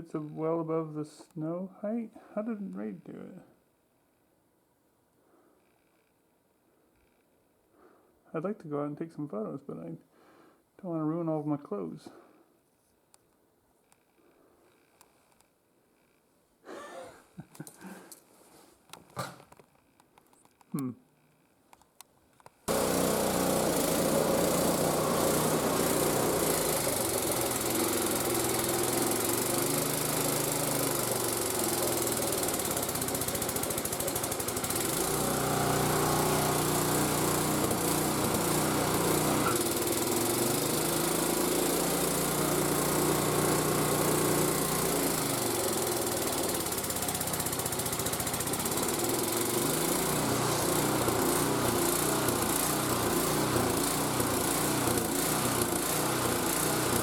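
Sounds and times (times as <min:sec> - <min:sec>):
snowblower engine running hard: 0:22.7 - 0:57.0.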